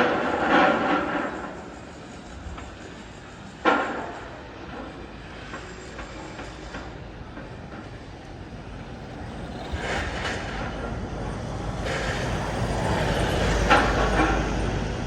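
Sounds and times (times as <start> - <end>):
heavy vehicle rumble: 6.0 - 15.0.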